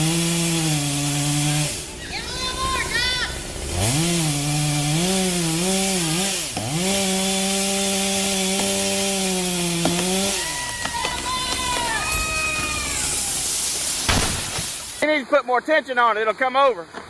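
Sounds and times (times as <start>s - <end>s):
chainsaw cutting a tree: 0.0s - 2.0s, 3.2s - 14.9s.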